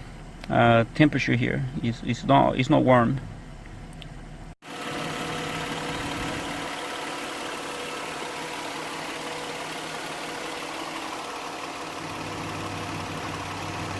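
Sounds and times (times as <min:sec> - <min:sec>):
car engine idling: 0:02.9 - 0:13.9.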